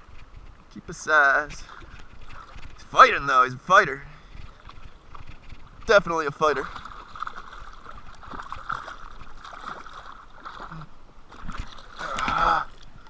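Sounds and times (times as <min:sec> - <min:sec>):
water splashing and gurgling: 0:00.0 - 0:13.0
fish thrashing in water: 0:06.6 - 0:13.0.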